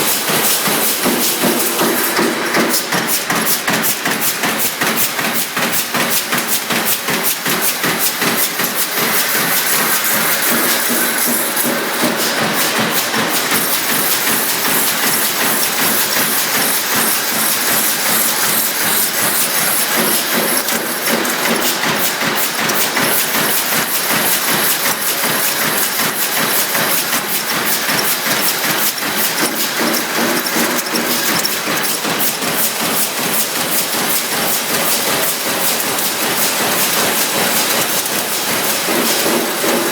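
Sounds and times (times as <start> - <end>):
press strokes clattering: 0.0 - 39.9.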